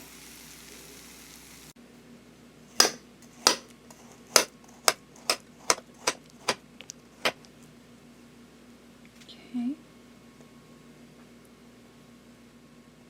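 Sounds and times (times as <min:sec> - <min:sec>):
utensil knocking on hard surface: 0:02.8 - 0:06.6.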